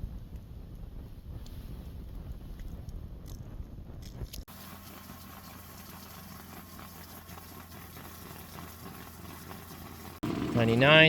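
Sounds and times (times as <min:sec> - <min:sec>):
steady motor hum: 0:04.5 - 0:11.0.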